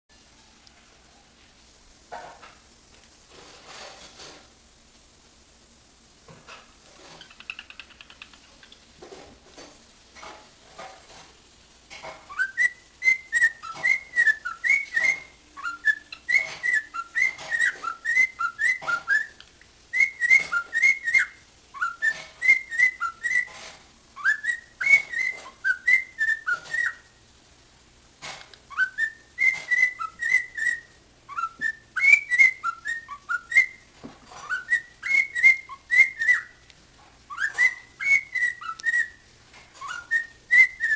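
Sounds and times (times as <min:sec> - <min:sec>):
soft clicks and faint chirps: 0:02.2 - 0:05.1, 0:06.3 - 0:27.2, 0:28.2 - 0:40.9
cockatiel whistling: 0:12.3 - 0:27.2, 0:28.7 - 0:36.6, 0:37.3 - 0:39.2, 0:39.8 - 0:40.9.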